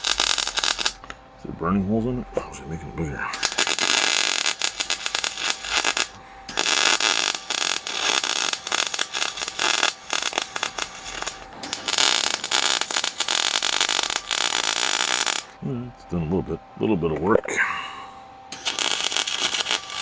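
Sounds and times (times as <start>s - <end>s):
welding arc crackling and sizzling: 0.0s - 1.1s, 3.3s - 15.6s, 18.5s - 20.0s.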